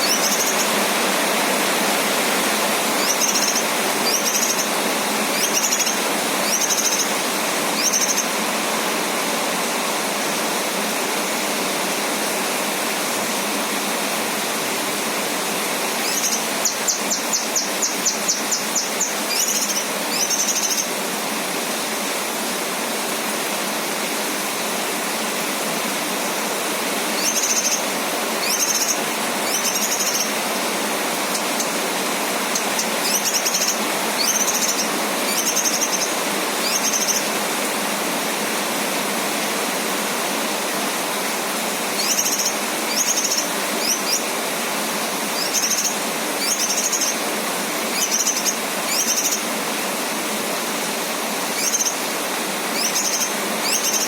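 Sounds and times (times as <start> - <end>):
bird chirping calls: 0.0 - 0.8, 2.9 - 7.2, 7.8 - 8.3, 16.0 - 21.0, 27.2 - 30.4, 31.2 - 31.8, 32.4 - 37.3, 42.0 - 44.3, 45.4 - 47.2, 47.9 - 49.5, 51.5 - 52.1, 52.8 - 54.0
rain hiss: 0.0 - 54.0.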